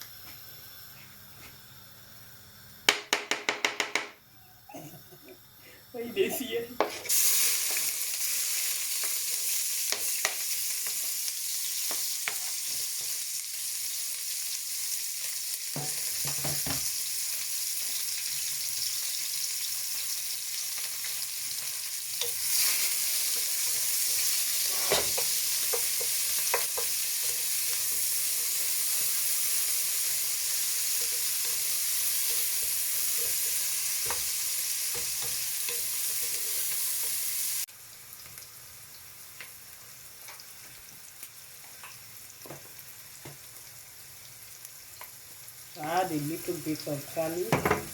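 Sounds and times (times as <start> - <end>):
food sizzling in hot oil: 0.0 - 4.0, 5.3 - 47.9
spoon clinking and scraping pan: 22.2 - 29.1, 30.9 - 37.2.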